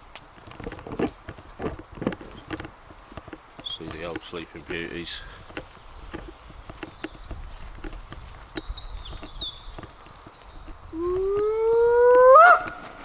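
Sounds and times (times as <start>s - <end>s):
campfire crackling: 0.0s - 13.0s
songbird trilling: 2.8s - 13.0s.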